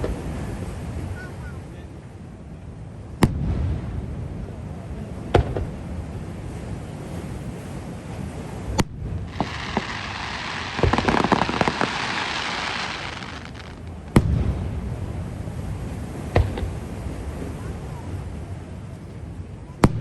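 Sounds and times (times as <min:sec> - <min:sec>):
firework bangs: 0:09.2 - 0:16.9
firework hissing and crackling: 0:09.3 - 0:14.4.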